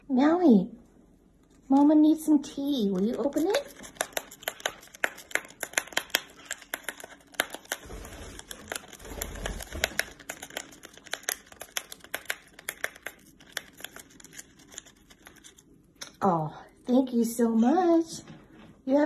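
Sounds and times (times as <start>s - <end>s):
parrot tearing packaging: 2.8s - 15.8s.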